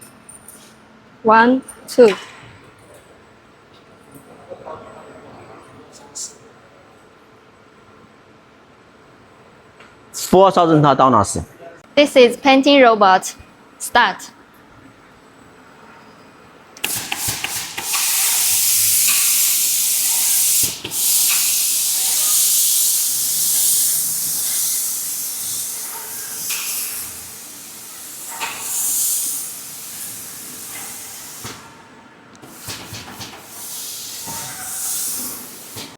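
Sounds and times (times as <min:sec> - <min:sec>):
spray gun hissing air: 0:16.8 - 0:31.8, 0:32.5 - 0:35.9.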